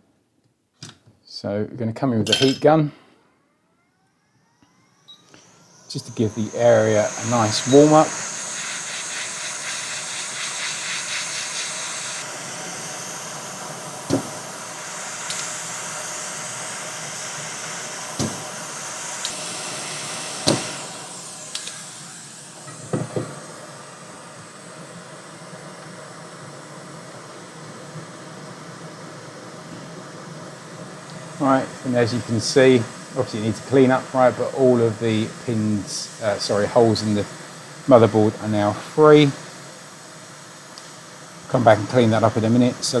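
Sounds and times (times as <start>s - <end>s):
heat gun blowing with a hiss: 4.5s - 43.0s
sharp clicks: 15.3s - 15.6s, 21.5s - 21.8s.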